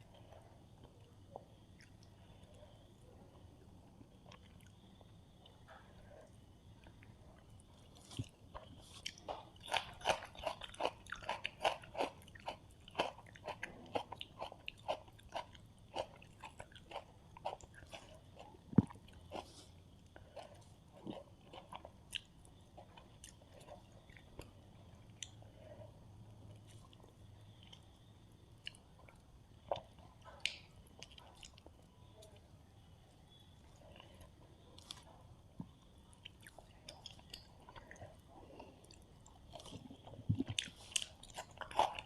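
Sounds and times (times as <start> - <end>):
close chewing: 4.2 - 27.9, 33.8 - 42.0.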